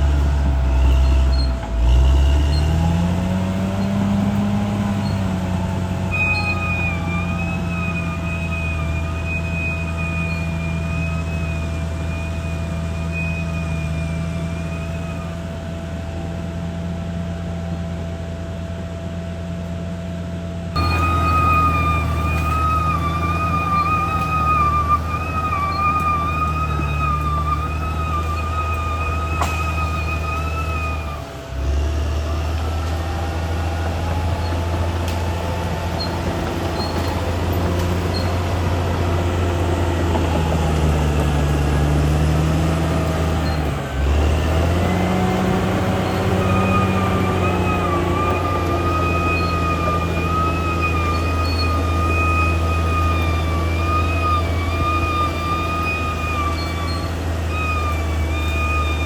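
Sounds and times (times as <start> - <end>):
bulldozer diesel engine drone: 0.0 - 59.0
high wavering whine: 20.8 - 59.0.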